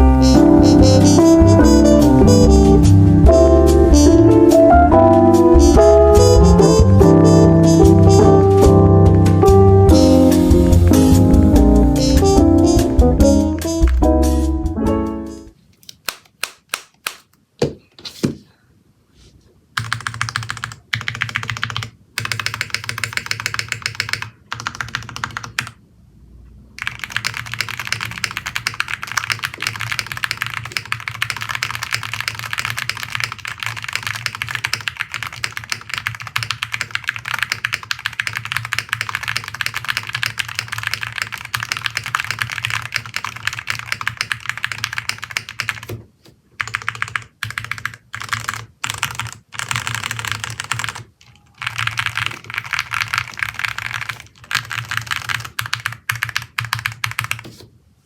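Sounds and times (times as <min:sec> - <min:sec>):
mechanical keyboard typing: 0:19.8 - 0:25.8, 0:26.8 - 0:46.0, 0:46.6 - 0:57.6.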